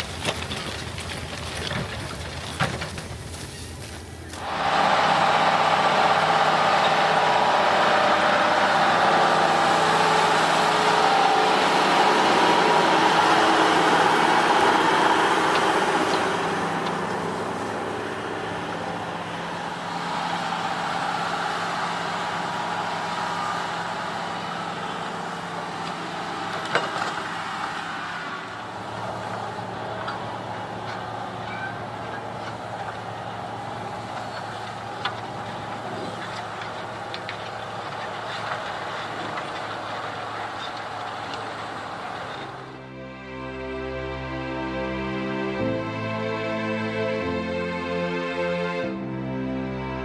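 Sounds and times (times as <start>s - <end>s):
diesel engine running: 0.0s - 50.0s.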